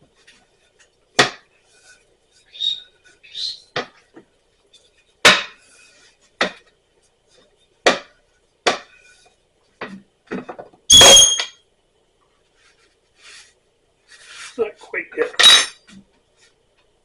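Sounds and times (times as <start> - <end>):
metallic clang with ringing: 10.9 - 11.6, 15.4 - 15.8.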